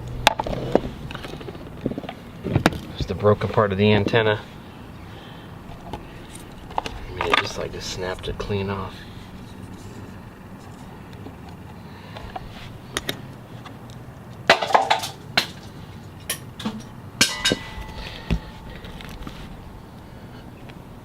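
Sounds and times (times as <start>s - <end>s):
sharp clicks and knocks of hard parts: 12.2s - 19.3s.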